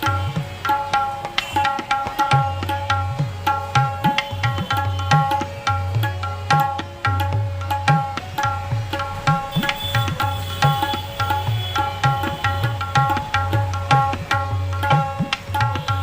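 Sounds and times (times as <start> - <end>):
tabla bass drum booming: 0.0 - 16.0
tabla right-hand drum strokes: 0.0 - 16.0.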